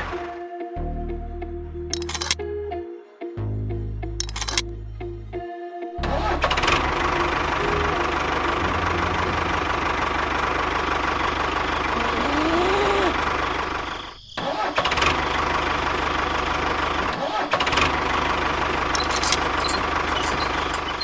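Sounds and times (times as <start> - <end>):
engine running: 6.4 - 14.0, 17.8 - 21.0.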